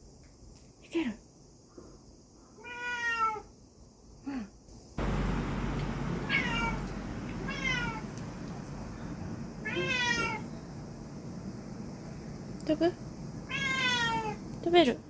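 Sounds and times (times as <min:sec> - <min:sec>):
cat meowing: 0:02.6 - 0:03.4, 0:06.2 - 0:08.1, 0:09.6 - 0:10.5, 0:13.4 - 0:14.4
low background rumble: 0:05.0 - 0:15.0.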